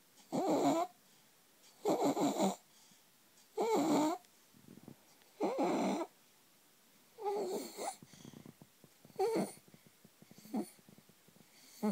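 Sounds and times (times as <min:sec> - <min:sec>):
infant rasping breathing: 0:05.4 - 0:06.1, 0:07.2 - 0:11.9.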